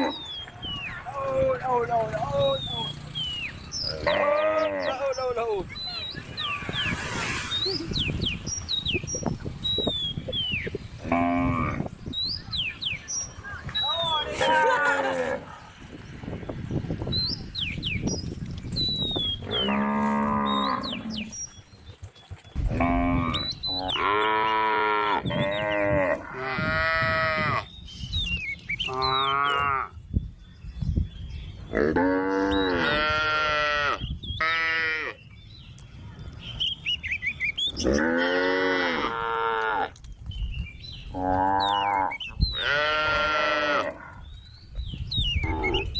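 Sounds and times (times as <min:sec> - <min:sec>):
cow mooing: 0:03.8 - 0:05.0, 0:19.5 - 0:21.3, 0:31.8 - 0:35.2, 0:37.8 - 0:39.9, 0:41.2 - 0:44.2
high chirping whistles: 0:05.7 - 0:10.8.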